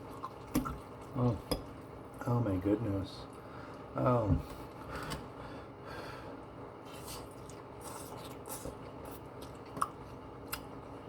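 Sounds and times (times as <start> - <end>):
chewing: 6.9 - 11.0.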